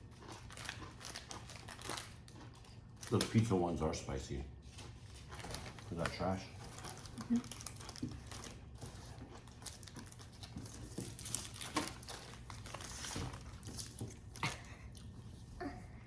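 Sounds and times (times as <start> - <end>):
snack wrappers crinkling: 0.0 - 3.7, 4.7 - 15.2.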